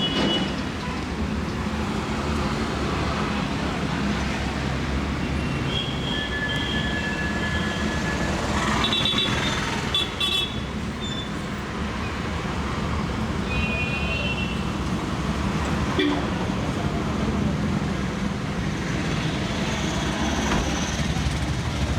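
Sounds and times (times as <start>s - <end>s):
rumble of passing vehicles: 0.0s - 21.9s
car horn toots: 16.0s - 16.4s.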